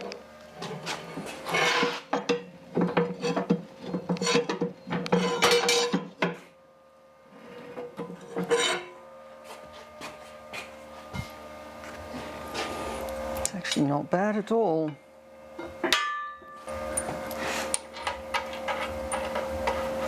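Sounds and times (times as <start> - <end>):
metal tools clinking and scraping: 0.6 - 6.1.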